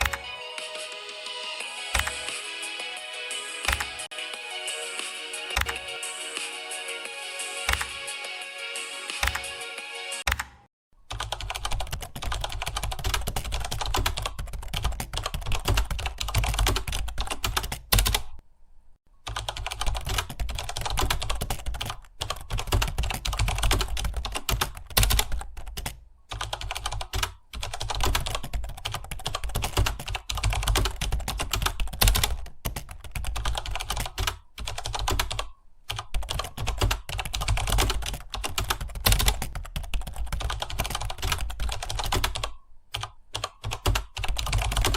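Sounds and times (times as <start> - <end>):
fast typing on a keyboard: 1.9 - 2.4, 7.7 - 7.9, 11.1 - 18.4, 19.3 - 44.9.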